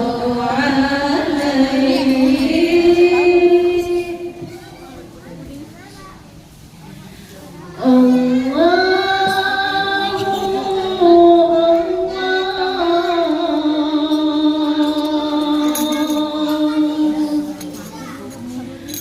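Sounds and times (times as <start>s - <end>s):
person singing unaccompanied: 0.0s - 4.5s, 7.8s - 17.5s.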